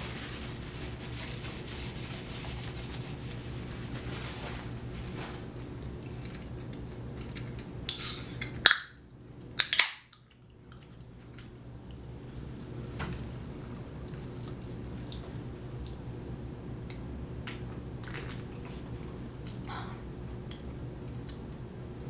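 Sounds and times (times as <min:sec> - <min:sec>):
steady low hum: 0:00.0 - 0:22.0
person chewing: 0:13.2 - 0:16.0, 0:18.0 - 0:19.7.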